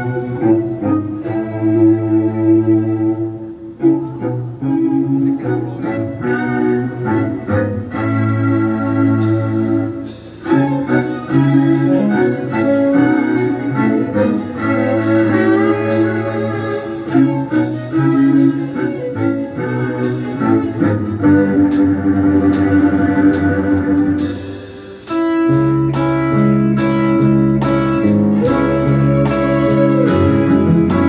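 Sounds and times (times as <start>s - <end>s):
rock music: 23.7s - 31.0s.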